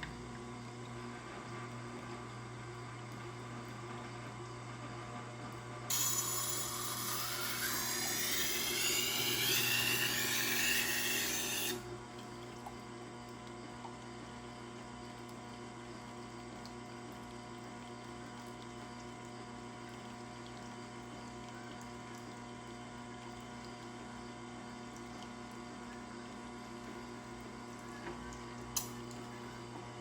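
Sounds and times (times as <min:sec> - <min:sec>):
knife grinding on stone: 0:05.9 - 0:11.8
sharpener motor hum: 0:05.9 - 0:11.8.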